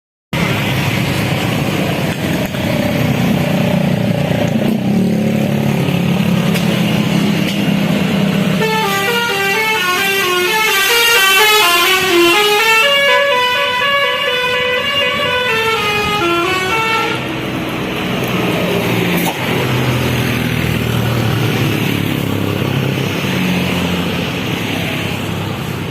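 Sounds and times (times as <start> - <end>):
low bus engine: 0.4 - 25.9
traffic hum: 0.4 - 25.9
air horns playing a tune: 8.6 - 17.3.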